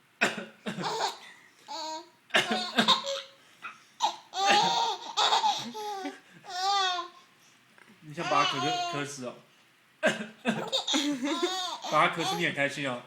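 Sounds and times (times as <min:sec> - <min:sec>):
boy laughing: 0:04.4 - 0:06.6, 0:10.4 - 0:12.4
man coughing: 0:10.0 - 0:10.4.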